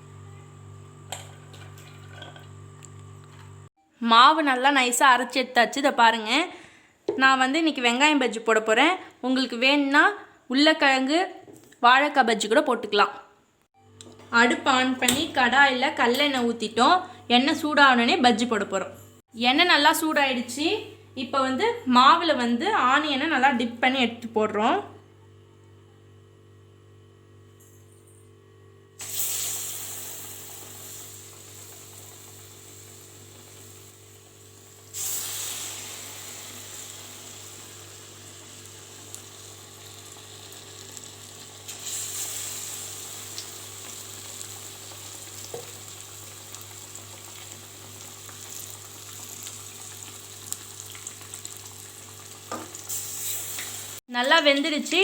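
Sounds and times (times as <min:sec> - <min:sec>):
onion slices sizzling in hot oil: 0:29.0 - 0:54.0.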